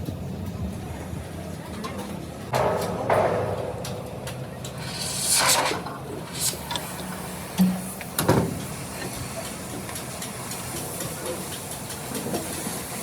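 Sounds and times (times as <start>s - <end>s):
low steady hum: 2.4s - 8.9s
sharp metallic knock: 2.6s - 5.8s
rushing hissing noise: 4.7s - 9.3s.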